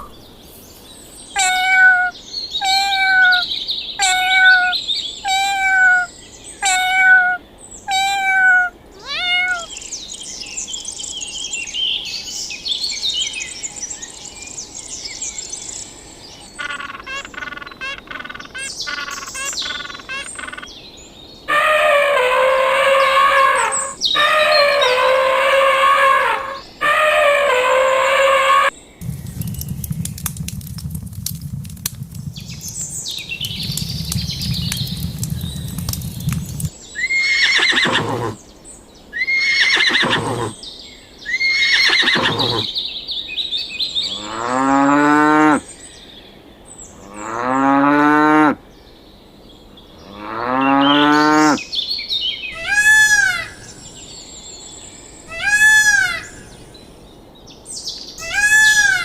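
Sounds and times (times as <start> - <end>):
low rumbling animal noise: 21.5 - 36.7, 37.7 - 38.4, 40.0 - 40.6, 42.0 - 42.7.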